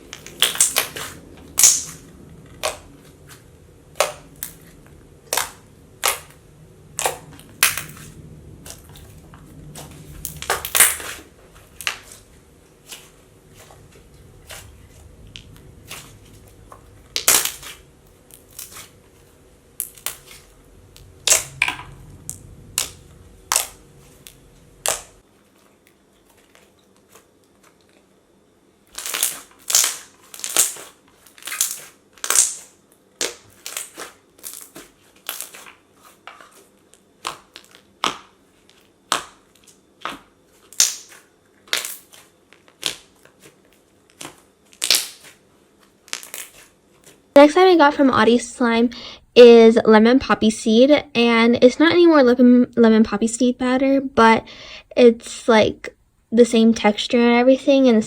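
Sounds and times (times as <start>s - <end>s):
low background hum: 0.0s - 58.0s
slime clicking and popping: 0.2s - 2.0s, 5.3s - 6.4s, 21.2s - 25.2s, 29.0s - 35.7s, 40.0s - 43.1s, 44.1s - 45.3s.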